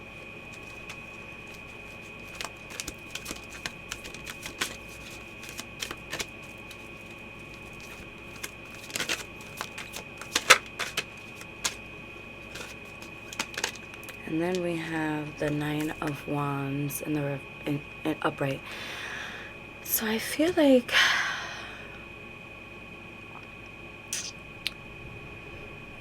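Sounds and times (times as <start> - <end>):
faint high-pitched whine: 0.0 - 26.0
cards flicking and slapping on table: 2.2 - 6.3, 8.4 - 11.8.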